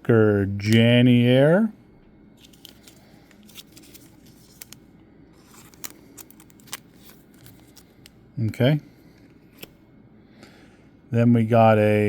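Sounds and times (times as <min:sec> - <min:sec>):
trading cards being handled: 0:02.4 - 0:08.2, 0:09.1 - 0:09.8.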